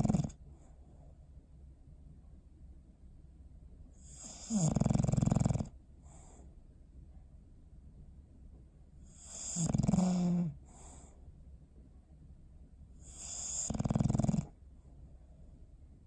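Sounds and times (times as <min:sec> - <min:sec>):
dog snoring: 0:00.0 - 0:00.4, 0:04.0 - 0:06.4, 0:09.0 - 0:11.1, 0:13.0 - 0:14.6
wheezy breath: 0:10.6 - 0:11.2.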